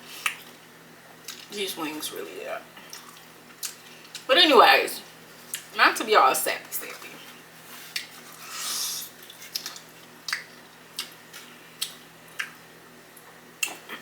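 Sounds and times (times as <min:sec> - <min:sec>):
breathy hiss: 0:08.4 - 0:09.1
person chewing wet mouth clicks: 0:09.3 - 0:12.6.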